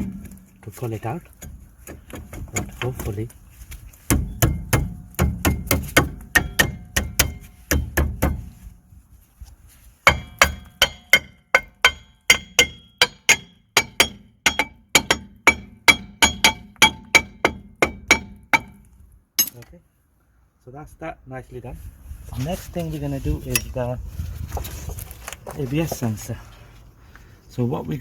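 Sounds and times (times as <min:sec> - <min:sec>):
hammer striking brake drum: 0:04.1 - 0:08.5, 0:10.1 - 0:18.8.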